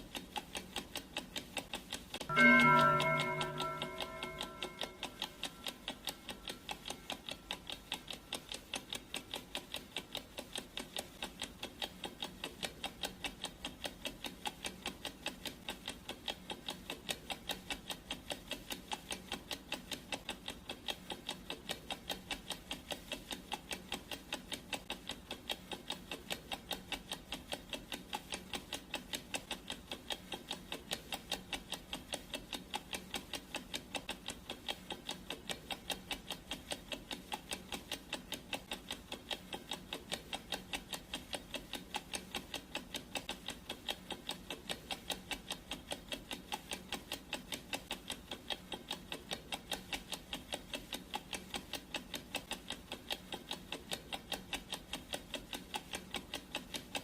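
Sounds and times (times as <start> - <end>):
clock ticking: 0.0 - 57.0
ringing tone: 2.3 - 5.7.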